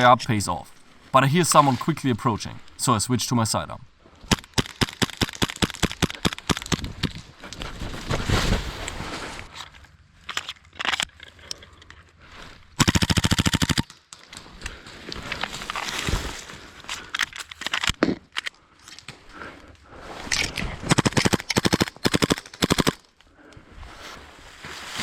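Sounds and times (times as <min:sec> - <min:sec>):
airsoft guns firing full-auto bursts: 0:04.3 - 0:06.9, 0:12.8 - 0:13.9, 0:20.9 - 0:23.0.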